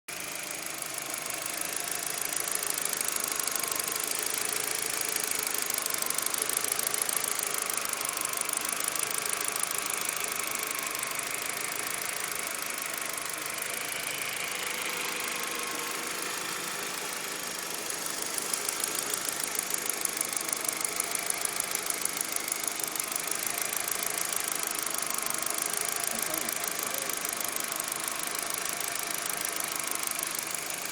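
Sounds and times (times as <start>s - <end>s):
car engine idling: 0.1s - 30.9s
fast even engine ticking: 0.1s - 30.9s.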